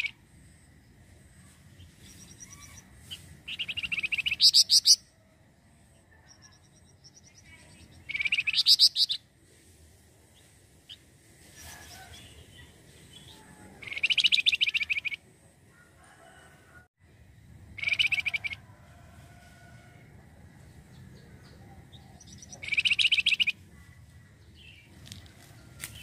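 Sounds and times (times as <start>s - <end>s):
songbird chattering: 3.5s - 5.0s, 6.2s - 9.2s, 13.2s - 15.2s, 17.8s - 18.6s, 20.9s - 24.8s.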